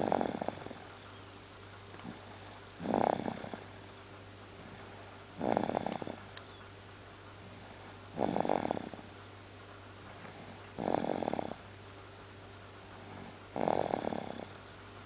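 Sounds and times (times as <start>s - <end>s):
rattly snoring: 0.0s - 0.9s, 2.0s - 3.8s, 4.6s - 6.3s, 7.4s - 9.2s, 10.1s - 11.7s, 12.9s - 14.6s.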